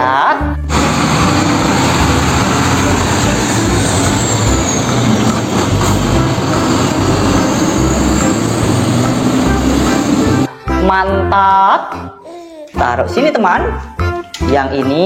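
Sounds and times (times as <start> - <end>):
truck engine rumbling: 0.7 - 10.5.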